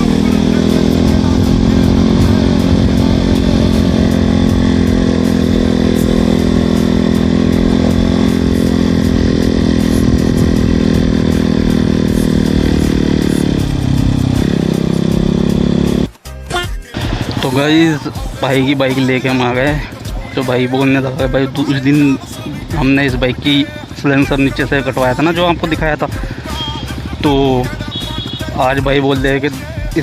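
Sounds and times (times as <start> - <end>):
motorcycle engine at high revs: 0.0 - 16.2, 16.9 - 30.0
wind noise: 1.0 - 4.8.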